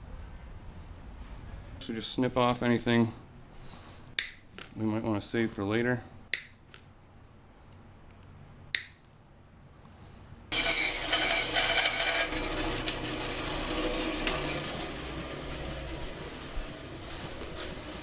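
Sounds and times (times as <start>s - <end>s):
power tool grinding: 10.5s - 18.0s.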